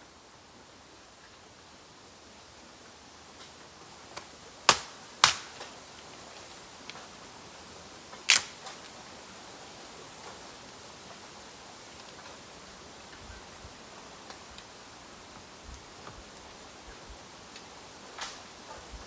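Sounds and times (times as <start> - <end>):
faint steady hiss: 0.0 - 19.0
fire crackling: 3.3 - 13.2, 13.8 - 19.0
bamboo bursting with loud bangs: 4.7 - 5.8, 8.3 - 8.8.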